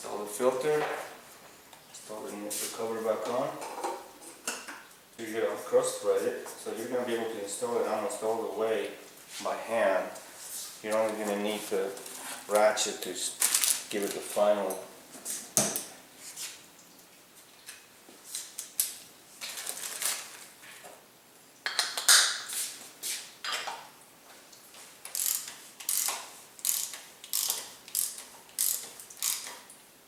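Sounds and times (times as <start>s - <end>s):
socket ratchet clicking: 25.1s - 29.6s.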